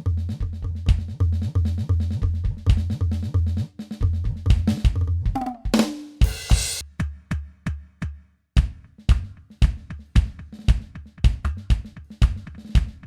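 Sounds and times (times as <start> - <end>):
electronic drum beat: 4.3 - 6.8.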